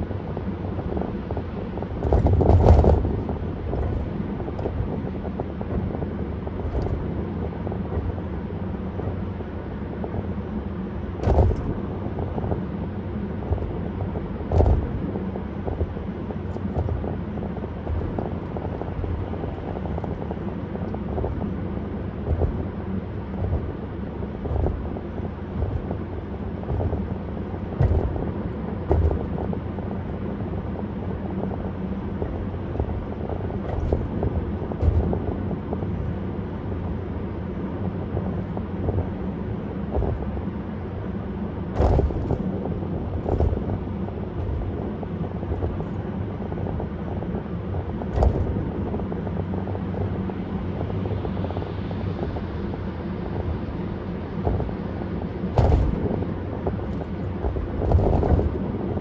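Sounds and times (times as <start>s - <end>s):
road and tyre rumble: 0.0s - 59.0s
short thumps: 24.4s - 29.6s, 55.6s - 58.6s.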